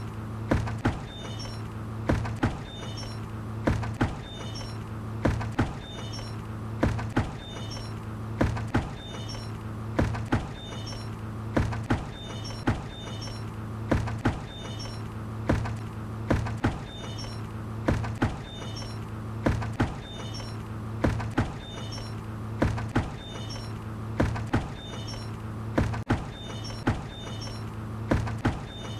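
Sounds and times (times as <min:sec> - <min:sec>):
steady low hum: 0:00.0 - 0:28.9
faint high squeak: 0:01.0 - 0:01.7, 0:02.6 - 0:03.3, 0:04.2 - 0:04.8, 0:05.7 - 0:06.4, 0:07.3 - 0:08.0, 0:08.9 - 0:09.6, 0:10.5 - 0:11.2, 0:12.1 - 0:13.5, 0:14.4 - 0:15.1, 0:16.7 - 0:17.5, 0:18.4 - 0:19.1, 0:19.9 - 0:20.6, 0:21.5 - 0:22.2, 0:23.0 - 0:23.8, 0:24.7 - 0:25.4, 0:26.3 - 0:27.7, 0:28.6 - 0:28.9.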